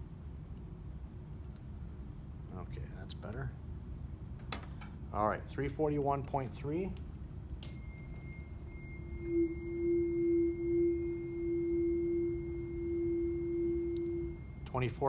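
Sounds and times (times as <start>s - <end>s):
tuning fork ringing pure tone: 7.6s - 15.0s.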